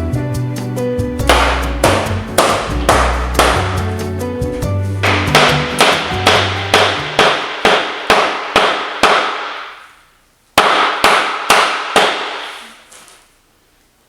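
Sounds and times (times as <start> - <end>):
hammer blows on hard surface: 1.2 - 3.9, 5.0 - 9.9.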